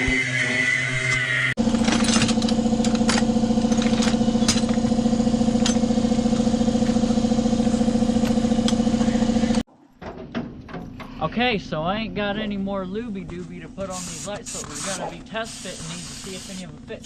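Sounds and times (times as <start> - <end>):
motor running steadily: 0.0 - 9.7.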